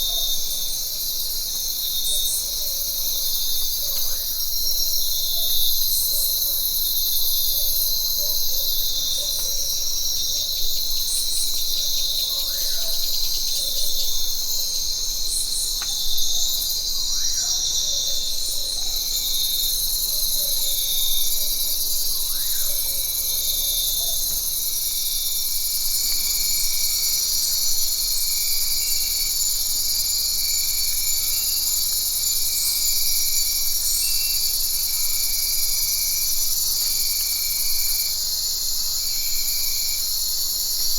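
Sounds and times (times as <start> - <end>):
high-pitched insect chorus: 0.0 - 40.9
pulsing insect trill: 0.0 - 40.9.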